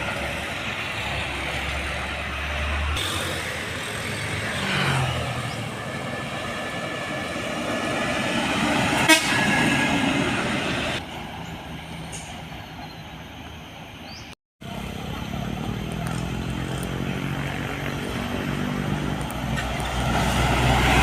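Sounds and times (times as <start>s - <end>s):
road traffic: 0.0s - 21.0s
truck diesel engine running: 0.0s - 21.0s.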